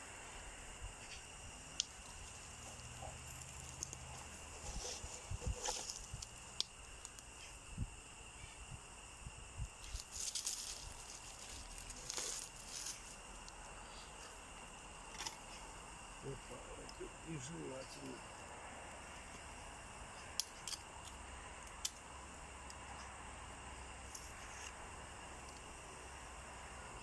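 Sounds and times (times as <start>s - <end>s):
light clicks and rustles: 1.0s - 8.6s, 9.7s - 14.4s.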